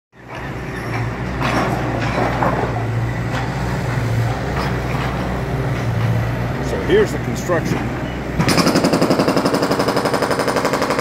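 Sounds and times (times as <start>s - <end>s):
machinery clatter: 7.6s - 11.0s.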